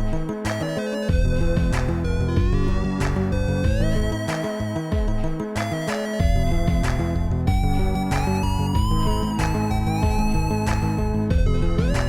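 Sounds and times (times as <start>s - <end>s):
upbeat electronic music: 0.0s - 12.0s.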